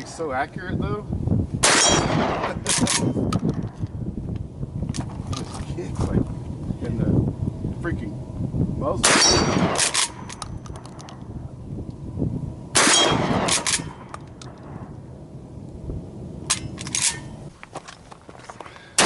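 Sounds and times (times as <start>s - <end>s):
gunshots: 9.0s - 10.3s, 12.8s - 14.1s.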